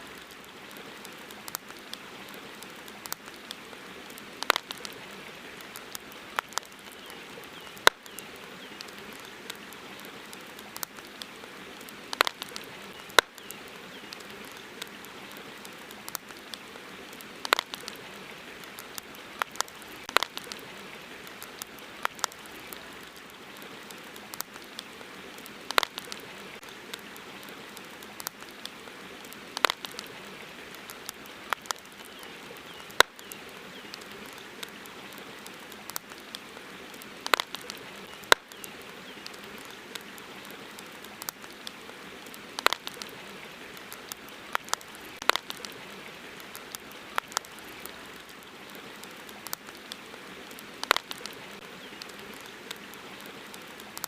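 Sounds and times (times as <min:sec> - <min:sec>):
campfire crackling and popping: 0:00.0 - 0:54.0
steady hiss of fire: 0:00.0 - 0:54.0.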